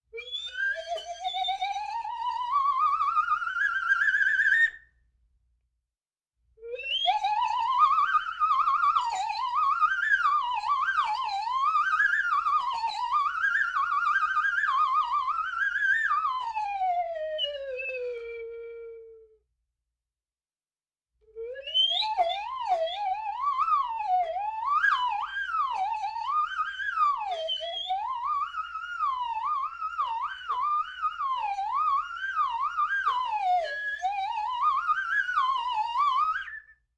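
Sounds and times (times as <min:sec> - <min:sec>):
slide whistle: 0:21.4 - 0:36.9.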